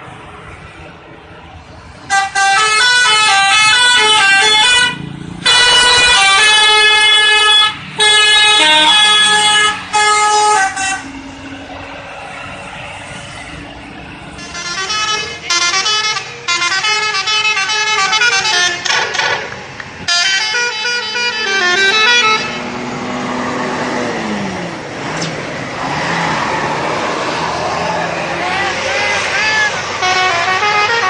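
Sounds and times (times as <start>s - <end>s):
musical bus air horn tune: 2.1s - 11.4s, 14.4s - 19.5s, 20.1s - 22.8s, 29.2s - 31.0s.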